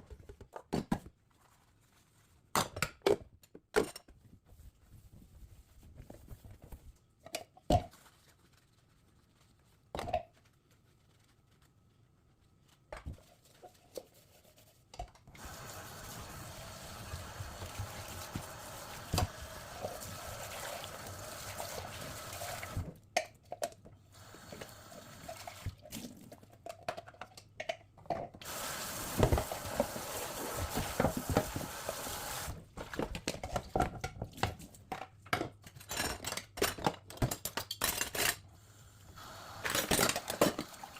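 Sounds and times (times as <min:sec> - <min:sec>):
tap running into sink: 0:15.4 - 0:20.3, 0:28.4 - 0:32.6.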